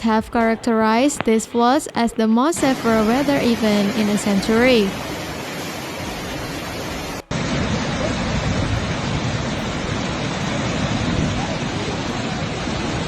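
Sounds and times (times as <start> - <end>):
floodwater rushing: 2.6 - 13.0.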